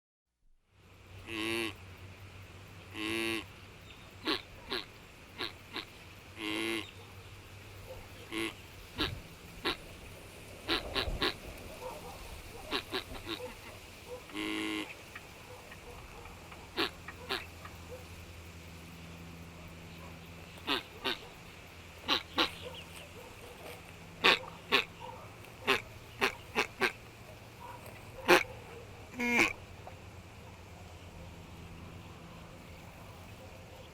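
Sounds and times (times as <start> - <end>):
ducks quacking: 1.2 - 1.8, 2.9 - 3.5, 4.2 - 7.0, 7.9 - 10.0, 10.6 - 18.0, 20.0 - 21.4, 22.0 - 29.7.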